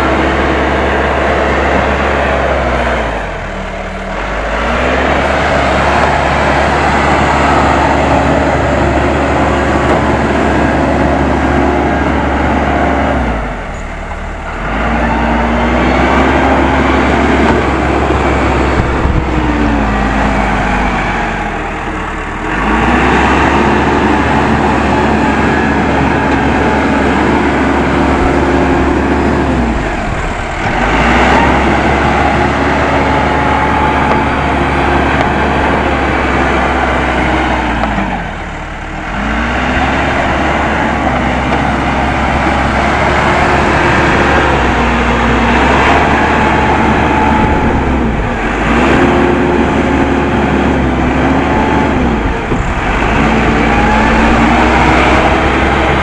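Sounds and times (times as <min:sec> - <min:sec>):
diesel engine working under load: 0:00.0 - 0:56.0.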